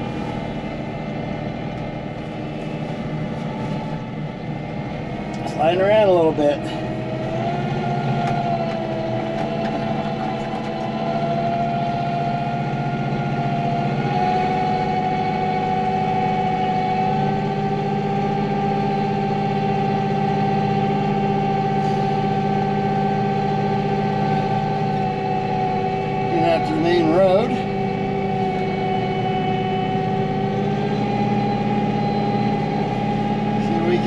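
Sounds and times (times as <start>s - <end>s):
high whine: 0.0s - 34.0s
tractor engine running: 0.0s - 34.0s.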